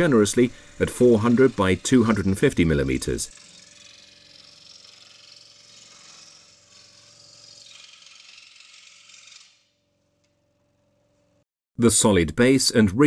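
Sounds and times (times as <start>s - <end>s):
scroll saw running: 0.0s - 9.8s.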